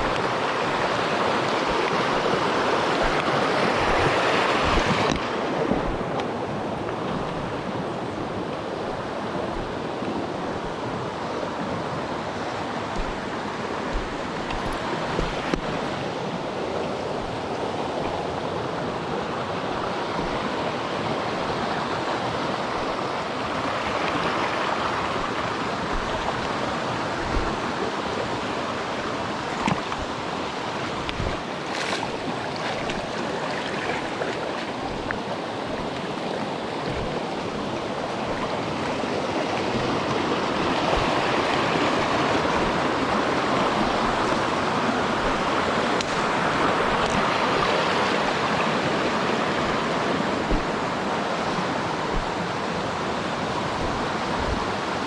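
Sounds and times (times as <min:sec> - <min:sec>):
stream rushing over rocks: 0:00.0 - 0:55.0.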